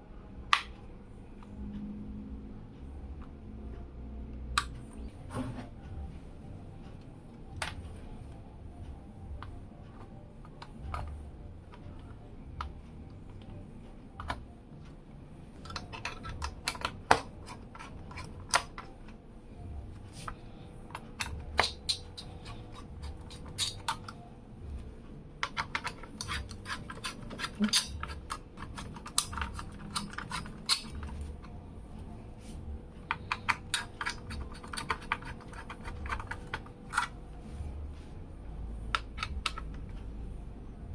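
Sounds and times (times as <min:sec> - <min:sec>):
small hard parts clicking: 0:20.3 - 0:24.2, 0:25.4 - 0:31.6, 0:33.0 - 0:37.2.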